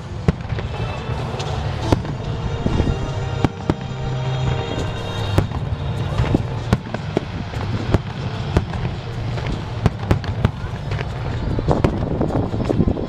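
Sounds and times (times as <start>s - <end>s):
fireworks bursting: 0.0s - 12.8s
continuous low rumble: 0.0s - 13.0s.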